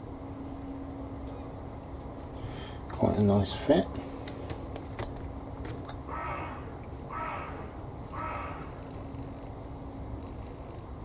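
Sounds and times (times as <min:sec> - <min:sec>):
bird calling harshly: 0:06.1 - 0:08.8.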